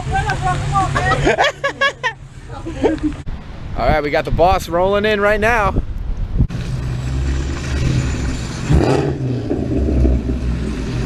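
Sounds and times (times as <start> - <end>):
car engine rumbling: 0.0 - 3.8, 5.8 - 11.0.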